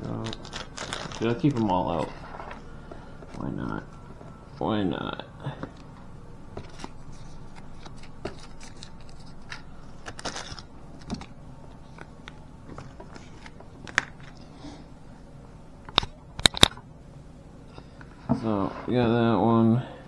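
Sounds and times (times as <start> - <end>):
packaging rustle: 0.0 - 4.8, 5.5 - 15.0.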